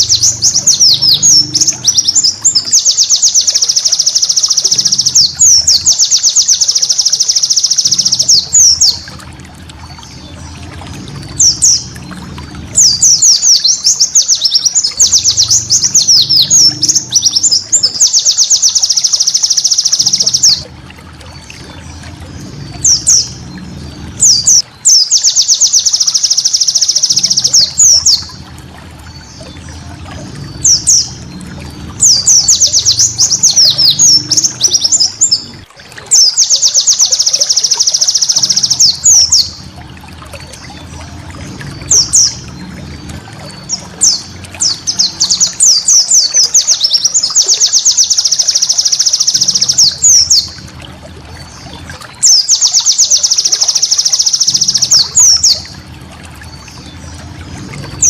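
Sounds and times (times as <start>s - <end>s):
bird chirping: 0.0s - 9.1s, 12.8s - 20.7s, 22.4s - 28.4s, 29.1s - 39.7s, 40.7s - 50.6s, 52.2s - 55.7s
bird trilling: 0.0s - 9.2s, 12.8s - 20.7s, 32.0s - 39.8s, 52.2s - 55.7s.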